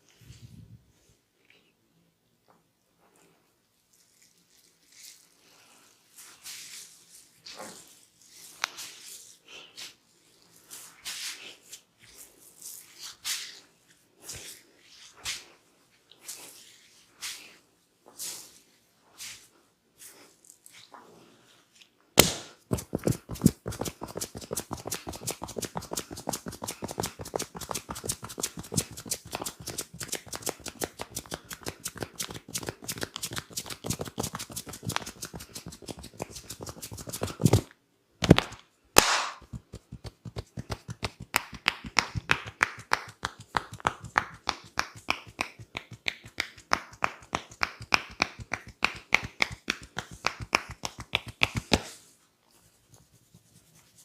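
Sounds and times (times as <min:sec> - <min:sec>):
hand claps: 0:22.2 - 0:51.9
hands slapping and chopping: 0:22.2 - 0:52.0.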